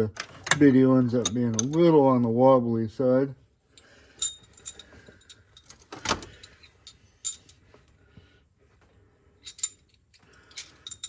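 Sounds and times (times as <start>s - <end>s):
metal tools clinking: 0.2s - 1.9s, 3.8s - 7.6s, 9.4s - 11.0s.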